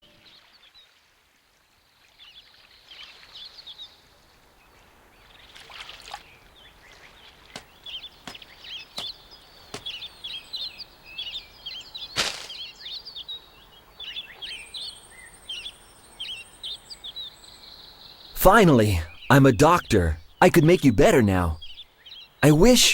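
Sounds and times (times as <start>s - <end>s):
birds chirping: 6.3s - 14.6s.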